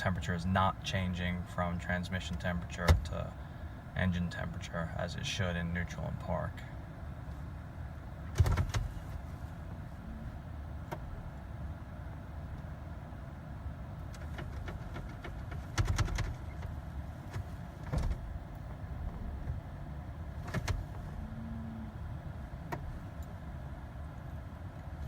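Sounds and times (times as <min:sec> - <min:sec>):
low steady rumble: 0:00.0 - 0:25.0
car controls clicking: 0:08.2 - 0:09.2, 0:10.8 - 0:11.2, 0:20.4 - 0:21.0
brief low hum: 0:20.9 - 0:22.8.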